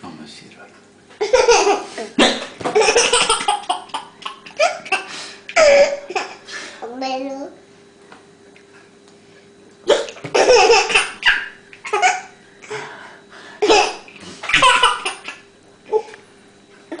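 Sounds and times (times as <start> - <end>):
baby laughing: 2.7 - 6.4, 10.0 - 12.3, 13.6 - 16.1.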